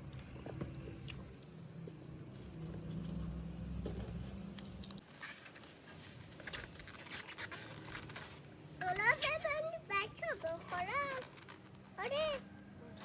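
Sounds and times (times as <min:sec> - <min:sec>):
faint scraping and clicking: 0:04.8 - 0:13.0.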